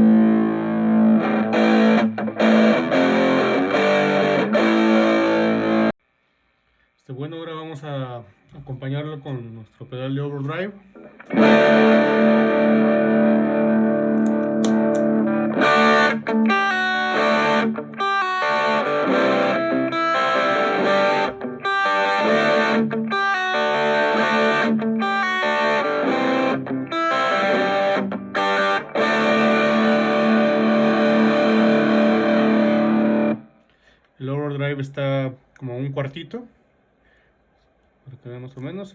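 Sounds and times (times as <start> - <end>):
distorted electric guitar chords: 0.0 - 6.0, 11.0 - 33.5.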